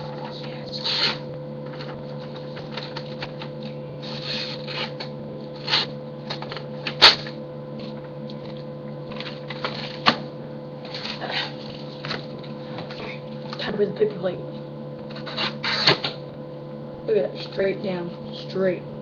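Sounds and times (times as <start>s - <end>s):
electrical hum: 0.0s - 19.0s
paper plate rustling: 1.6s - 5.0s.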